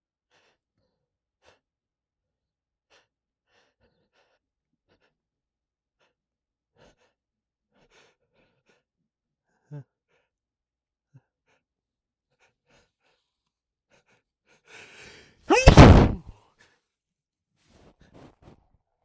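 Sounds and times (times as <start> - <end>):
man sneezing: 15.5 - 16.2.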